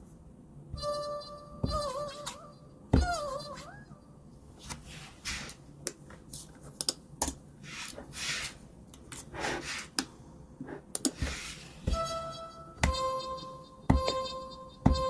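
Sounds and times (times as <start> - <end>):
keyboard and mouse clicks: 10.9 - 11.3.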